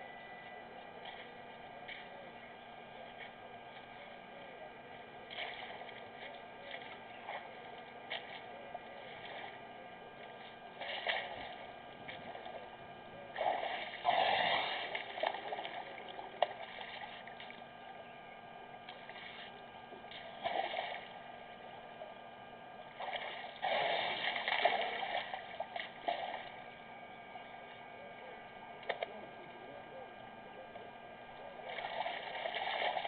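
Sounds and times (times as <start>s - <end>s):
faint steady hum: 0.0s - 33.0s
elephant drinking water splashing: 10.3s - 12.6s, 13.4s - 17.5s, 23.0s - 26.5s, 31.6s - 33.0s.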